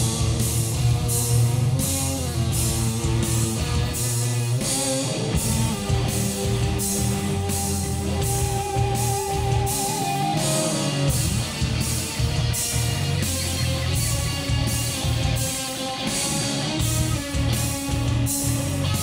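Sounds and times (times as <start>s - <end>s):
distorted electric guitar: 0.0s - 19.0s
drum and cymbal beat: 0.0s - 19.0s
heavy rock song over speakers: 0.0s - 19.0s.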